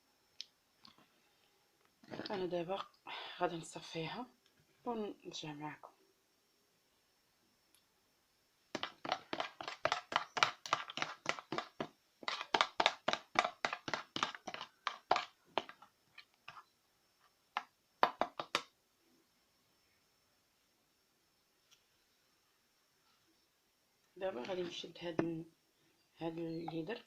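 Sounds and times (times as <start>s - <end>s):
utensil strokes in mixture: 8.8s - 16.7s.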